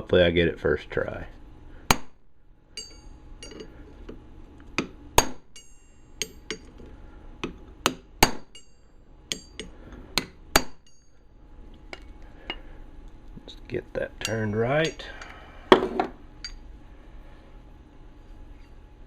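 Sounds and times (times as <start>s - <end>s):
hammer tapping on metal: 2.8s - 3.7s, 4.8s - 6.7s, 7.4s - 11.2s, 14.2s - 16.6s.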